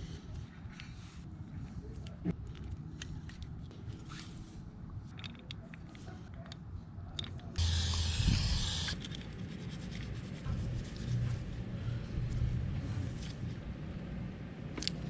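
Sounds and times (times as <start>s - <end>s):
parts clicking and scraping: 7.2s - 10.1s
aerosol spray hissing: 7.6s - 9.0s.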